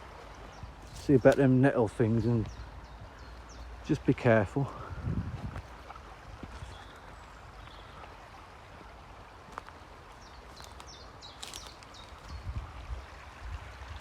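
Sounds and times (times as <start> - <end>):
stream water flowing: 0.0 - 14.0.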